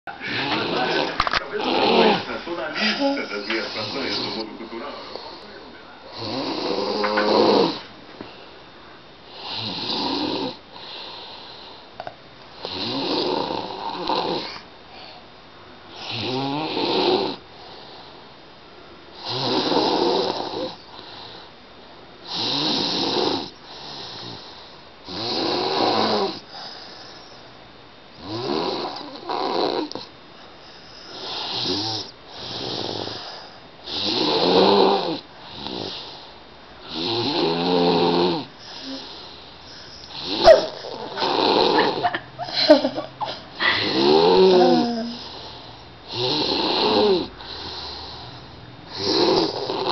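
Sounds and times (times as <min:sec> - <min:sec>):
quiet breathing: 0:00.1 - 0:09.1, 0:14.4 - 0:15.4, 0:26.4 - 0:27.6, 0:38.4 - 0:41.1, 0:43.2 - 0:49.9
person snoring: 0:00.2 - 0:04.4, 0:06.1 - 0:07.9, 0:09.4 - 0:11.3, 0:12.6 - 0:14.6, 0:16.0 - 0:17.4, 0:19.2 - 0:20.8, 0:22.3 - 0:24.5, 0:25.1 - 0:26.5, 0:28.2 - 0:30.1, 0:31.1 - 0:36.2, 0:36.9 - 0:42.1, 0:43.5 - 0:49.9.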